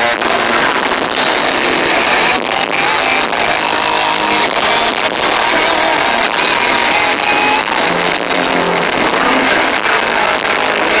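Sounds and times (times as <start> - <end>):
live heavy rock band: 0.0 - 11.0.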